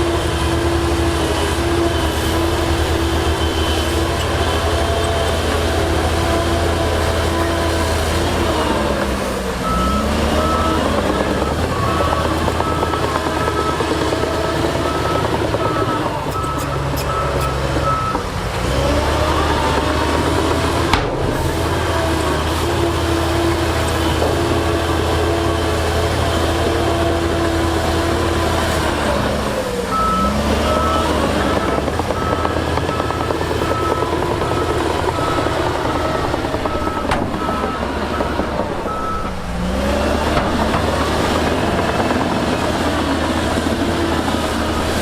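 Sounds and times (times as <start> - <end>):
diesel earthmoving machine running: 0.0 - 45.0
reversing alarm beeping: 0.4 - 5.4, 9.6 - 20.6, 29.9 - 45.0.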